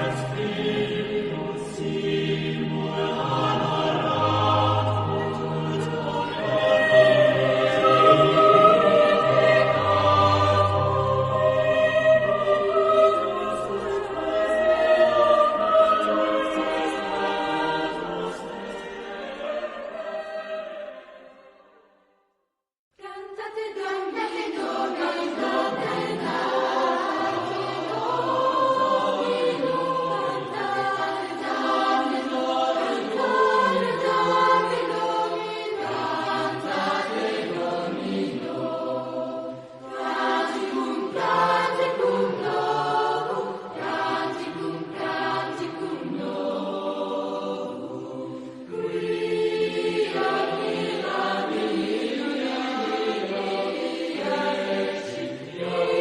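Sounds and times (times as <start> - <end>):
choir singing: 0.0 - 22.0, 23.0 - 56.0.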